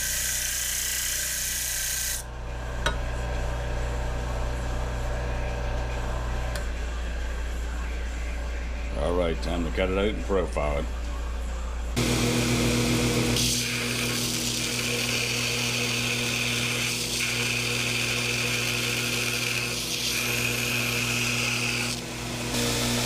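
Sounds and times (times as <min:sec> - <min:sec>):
power tool grinding steel: 0:00.0 - 0:02.2, 0:12.0 - 0:23.0.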